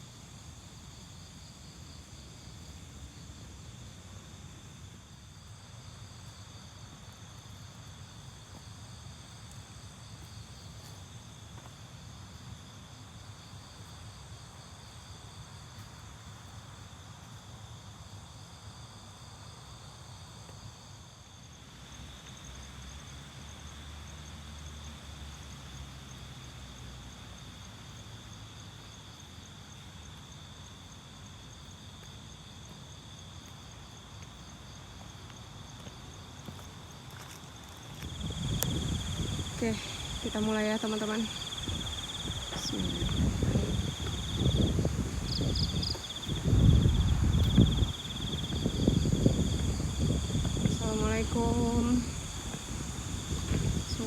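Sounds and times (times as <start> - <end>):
crickets and katydids calling: 33.9 - 54.0.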